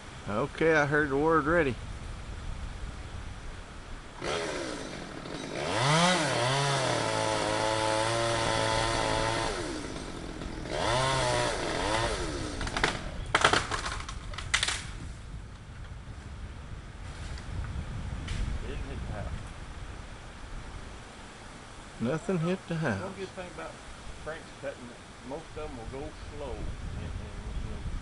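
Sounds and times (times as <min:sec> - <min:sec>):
chainsaw revving: 0:04.2 - 0:14.0
tree limb cracking and falling: 0:04.2 - 0:15.1.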